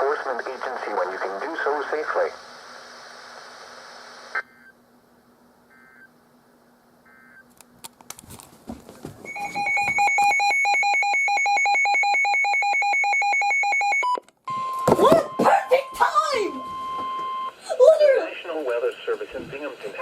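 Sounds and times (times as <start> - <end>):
pulsing two-tone alarm beeping: 9.3 - 17.6.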